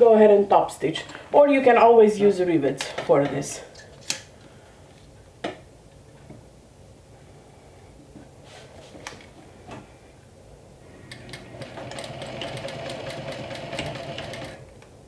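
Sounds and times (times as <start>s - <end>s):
sewing machine stitching: 11.2s - 14.6s.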